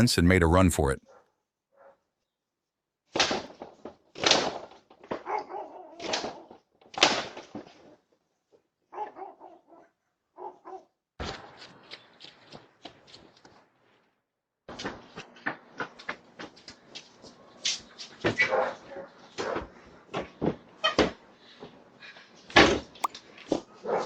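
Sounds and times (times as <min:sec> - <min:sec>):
dog barking: 0:01.0 - 0:02.0, 0:05.2 - 0:06.0, 0:08.9 - 0:10.9, 0:18.4 - 0:19.7, 0:23.8 - 0:24.0.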